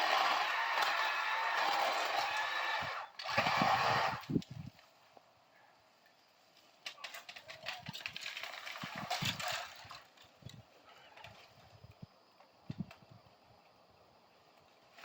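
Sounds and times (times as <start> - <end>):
bamboo and dry leaves rustling: 6.0 - 11.9, 14.3 - 15.0.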